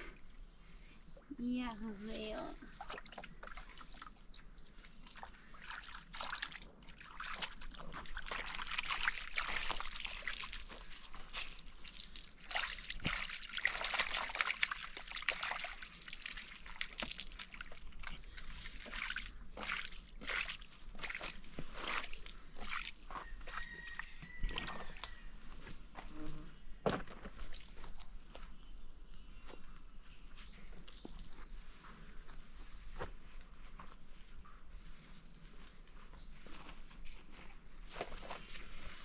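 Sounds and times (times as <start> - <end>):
water sloshing and splashing: 2.0 - 25.4.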